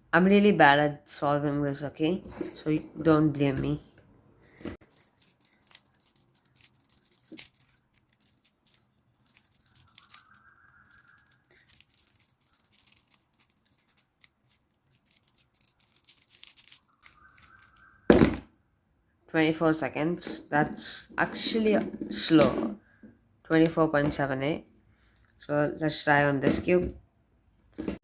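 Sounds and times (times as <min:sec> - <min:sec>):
puzzle cube clicking and rattling: 0:04.8 - 0:18.0
loud sharp thump: 0:18.1 - 0:18.5.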